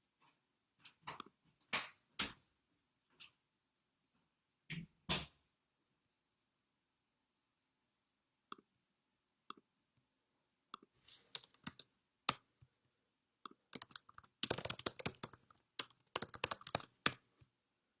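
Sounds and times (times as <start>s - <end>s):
sharp clicks and clattering: 11.1s - 12.4s, 13.8s - 17.2s.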